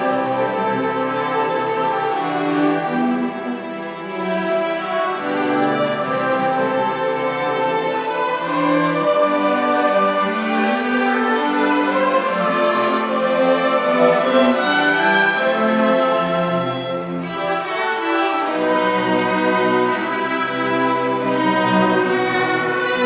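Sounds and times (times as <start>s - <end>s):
cello: 0.0s - 23.0s
violin: 0.0s - 23.0s.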